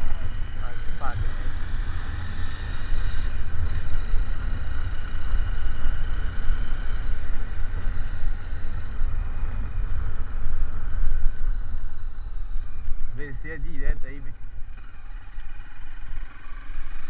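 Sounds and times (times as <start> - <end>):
vehicle engine and road noise: 0.0 - 17.0.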